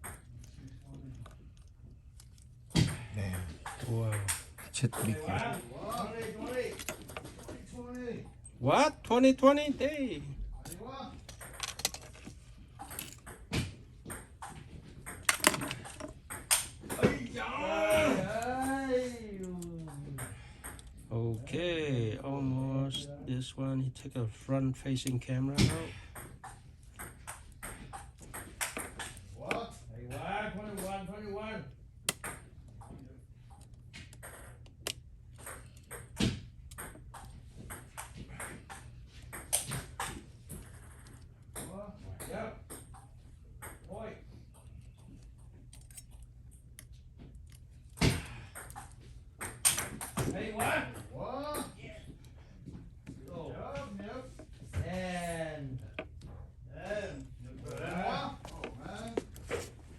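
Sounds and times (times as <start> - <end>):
small tools clicking and tapping: 0.0 - 7.8, 10.6 - 17.2, 24.8 - 29.7, 32.1 - 41.7, 42.7 - 50.7
small metal tools clicking: 45.7 - 46.2.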